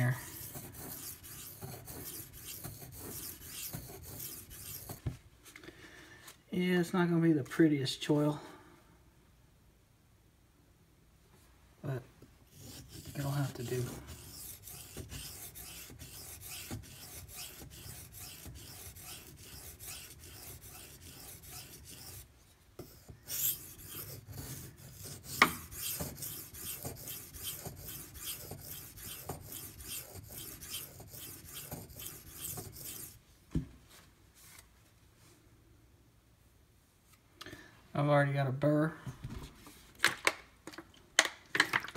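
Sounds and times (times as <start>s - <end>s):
knife rasping on whetstone: 0.0s - 5.0s, 12.5s - 33.2s.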